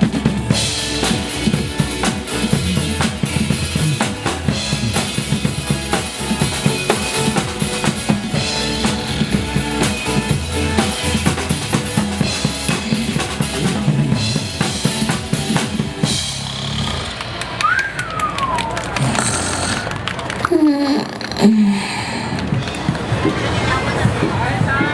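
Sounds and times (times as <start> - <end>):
pop song backing track: 0.0 - 16.3
drum kit playing: 0.0 - 20.0
high tone sliding downward: 16.0 - 21.5.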